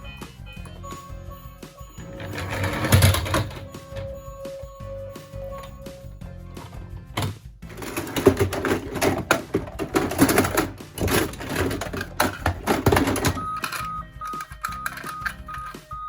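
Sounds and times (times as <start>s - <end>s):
high electronic beep: 0.8s - 6.3s, 13.4s - 16.0s
toy cars clattering: 2.0s - 4.2s, 7.2s - 15.8s.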